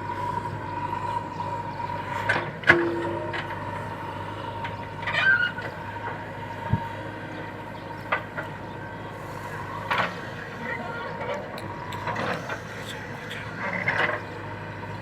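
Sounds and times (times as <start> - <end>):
diesel engine running: 0.0 - 15.0
machine clanks: 2.3 - 5.5.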